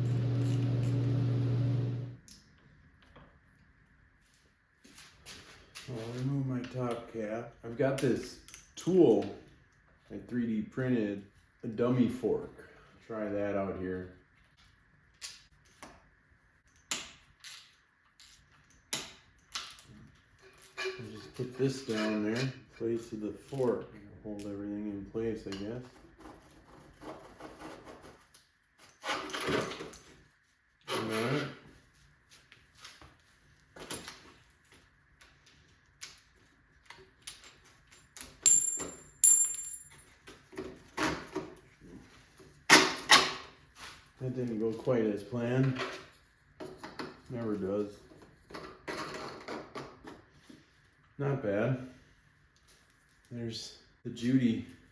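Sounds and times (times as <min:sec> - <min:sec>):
sharp metallic clinks: 0:38.4 - 0:40.0.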